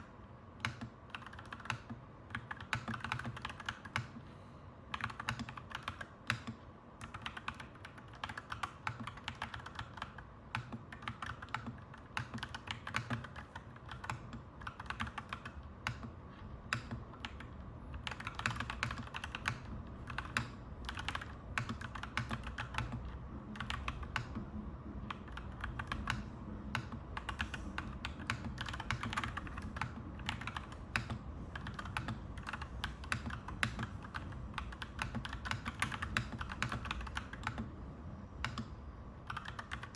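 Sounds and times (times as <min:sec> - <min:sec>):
mechanical keyboard typing: 0:00.0 - 0:04.2, 0:04.9 - 0:37.7, 0:38.4 - 0:39.9
low background rumble: 0:13.3 - 0:39.9.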